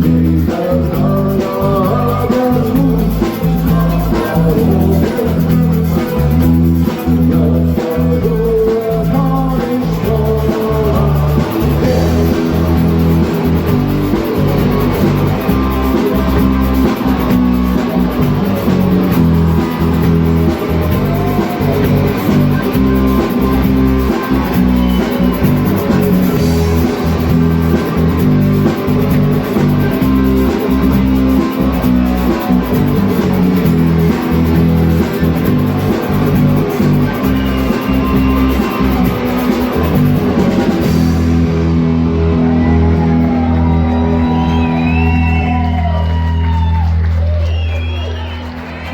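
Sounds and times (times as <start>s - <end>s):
song with guitar and drums: 0.0s - 48.0s.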